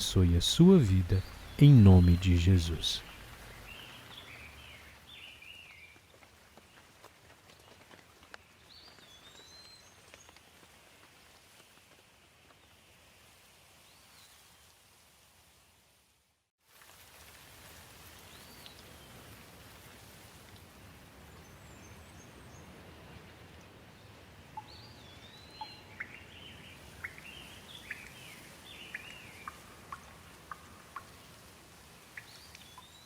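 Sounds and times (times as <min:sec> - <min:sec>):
rain hiss: 0:00.0 - 0:04.3
songbirds chirping: 0:00.0 - 0:05.8.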